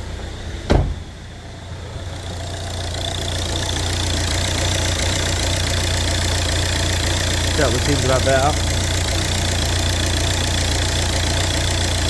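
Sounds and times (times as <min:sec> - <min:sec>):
car engine idling: 0:00.0 - 0:12.0
sharp thump: 0:00.7 - 0:01.1.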